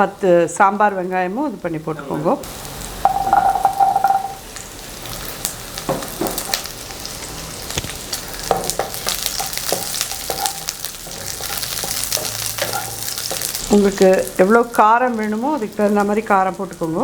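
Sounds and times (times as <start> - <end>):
garlic and onions sizzling: 0.0 - 17.0
spoon scraping a pan: 8.5 - 13.7.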